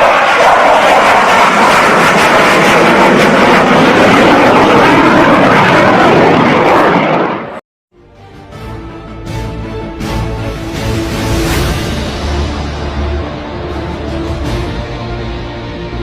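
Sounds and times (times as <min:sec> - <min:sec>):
jet engine roar: 0:00.0 - 0:07.6, 0:10.0 - 0:16.0.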